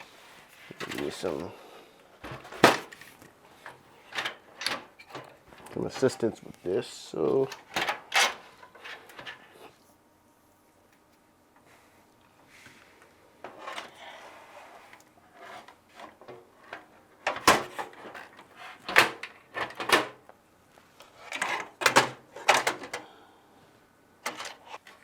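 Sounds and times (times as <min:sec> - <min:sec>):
plastic parts scraping and rubbing: 0:13.5 - 0:19.9.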